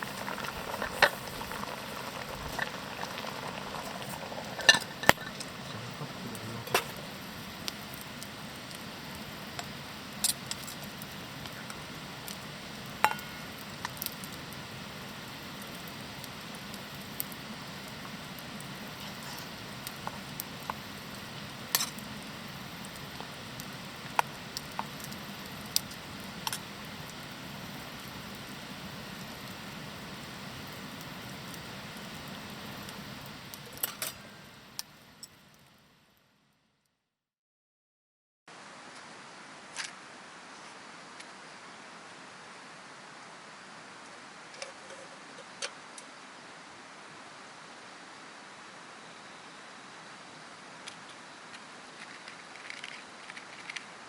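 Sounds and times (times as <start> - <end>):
campfire crackling and popping: 0.0 - 36.0, 50.8 - 53.9
low fire hiss: 0.0 - 36.6, 38.5 - 54.0.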